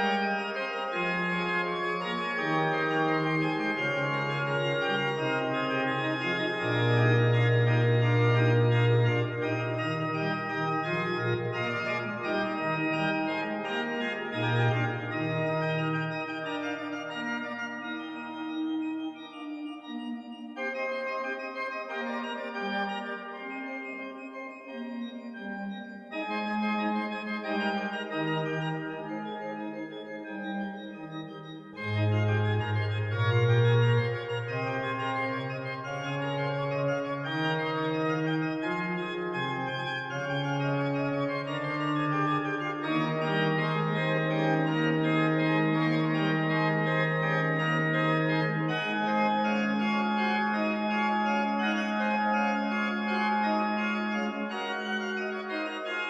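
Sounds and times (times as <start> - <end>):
organ playing held chords: 0.0 - 56.0
deep organ bass notes: 2.3 - 12.5, 31.8 - 47.4.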